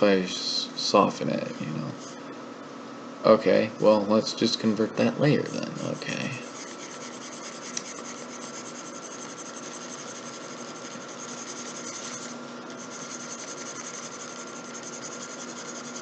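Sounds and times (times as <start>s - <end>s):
faint electrical hum: 0.0s - 16.0s.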